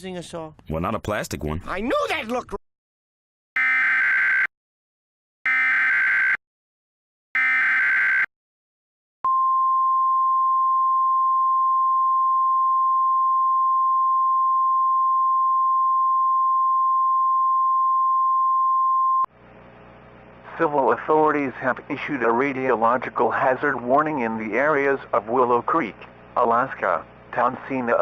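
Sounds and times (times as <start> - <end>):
steady single-pitch attention tone: 9.3 - 19.3.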